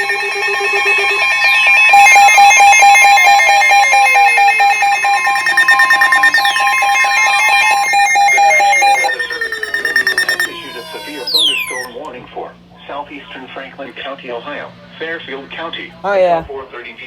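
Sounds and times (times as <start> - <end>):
falling whistle-like sweeps: 0.0 - 11.9
rapid electronic beeping: 0.0 - 12.0
steady warning alarm tone: 0.0 - 12.1.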